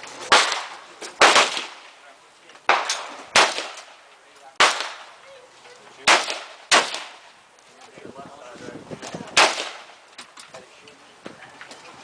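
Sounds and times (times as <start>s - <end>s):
gunshots with echo: 0.3s - 1.8s, 2.7s - 3.9s, 4.6s - 5.1s, 6.0s - 7.2s, 9.4s - 9.9s.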